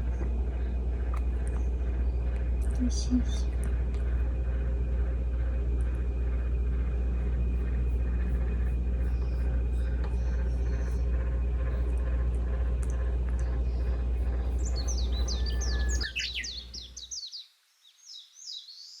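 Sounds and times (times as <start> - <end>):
low rumble: 0.0 - 17.0
bird twittering: 13.4 - 17.4.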